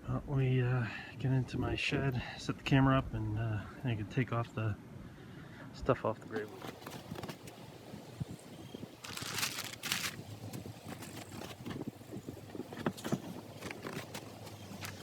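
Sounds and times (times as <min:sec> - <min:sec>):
rustling scrapes: 0:09.0 - 0:11.9, 0:12.5 - 0:15.0.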